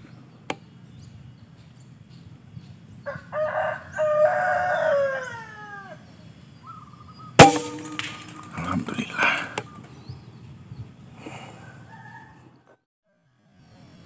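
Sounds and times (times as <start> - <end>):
rooster crowing: 3.0 - 6.1, 11.4 - 13.6
air rifle shot: 7.4 - 8.6.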